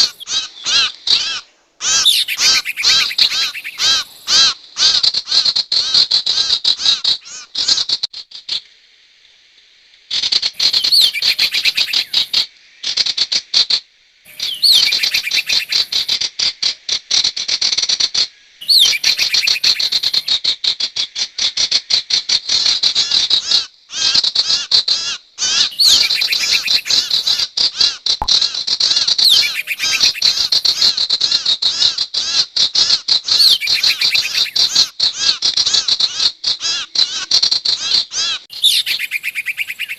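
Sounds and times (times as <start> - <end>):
high-pitched chattering bird chirps: 1.9 - 4.2, 10.6 - 12.4, 14.3 - 16.2, 18.6 - 20.3, 25.7 - 27.4, 29.2 - 30.9, 33.3 - 34.9, 38.5 - 39.9.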